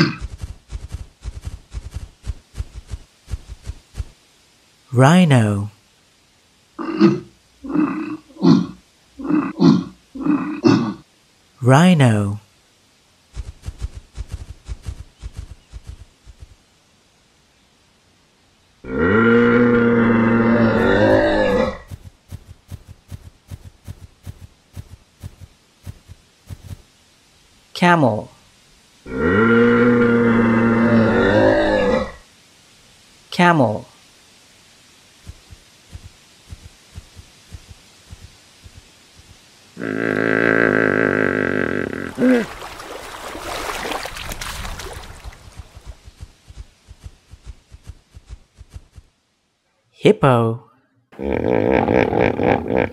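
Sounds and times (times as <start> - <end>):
soft regular pulses: 0.0 - 9.0, 21.1 - 27.7, 34.0 - 39.8, 41.6 - 49.6
camel grunting: 19.3 - 21.9, 39.8 - 42.5.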